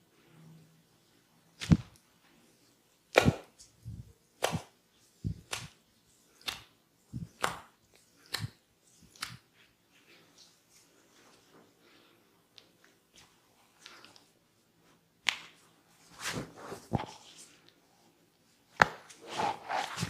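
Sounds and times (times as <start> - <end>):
hands slapping body: 1.6 - 2.0, 3.1 - 5.8, 6.4 - 9.5, 15.2 - 15.6.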